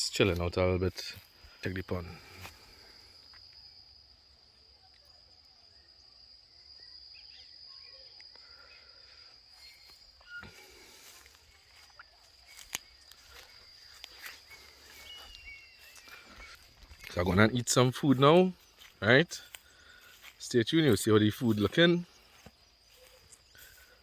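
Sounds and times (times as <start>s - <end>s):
insect high-pitched trill: 0.0s - 24.0s.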